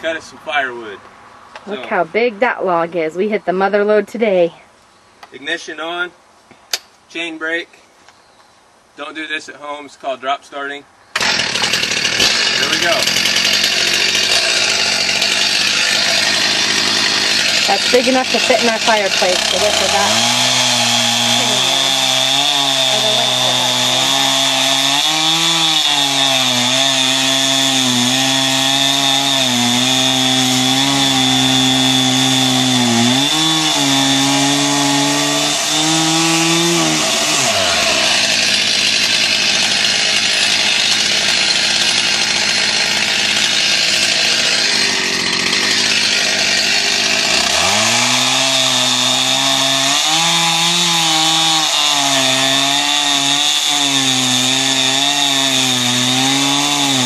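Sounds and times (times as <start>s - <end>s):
chainsaw cutting log: 1.6s - 2.6s, 11.2s - 57.0s.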